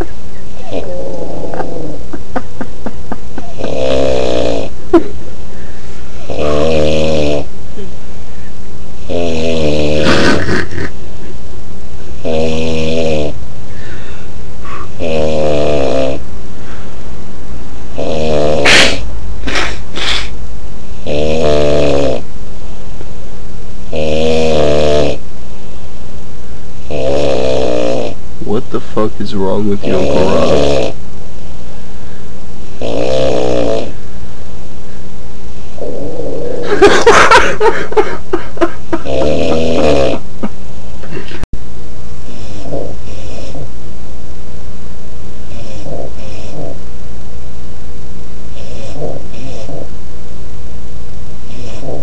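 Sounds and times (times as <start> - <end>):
man snoring loudly: 0.6 - 2.0, 3.4 - 4.8, 6.2 - 7.5, 9.0 - 11.0, 12.2 - 13.4, 14.9 - 16.2, 17.9 - 20.3, 21.0 - 22.2, 23.9 - 25.2, 26.9 - 28.2, 29.8 - 31.0, 32.8 - 34.0, 35.8 - 38.1, 38.9 - 40.3, 42.3 - 43.6, 45.5 - 46.8, 48.6 - 49.9, 51.5 - 52.0
hissing breath bursts: 18.6 - 20.4.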